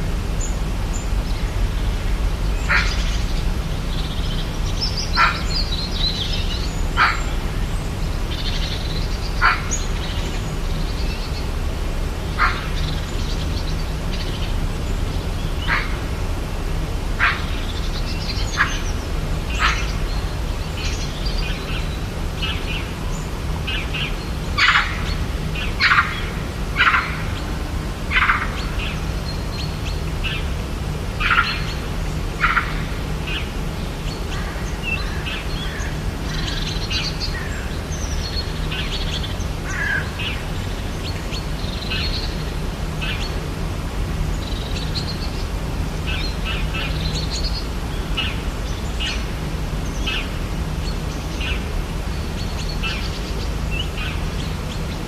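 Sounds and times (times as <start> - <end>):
low background rumble: 0.0 - 55.0
birds giving sharp calls: 2.5 - 11.6, 12.2 - 14.6, 15.2 - 55.0.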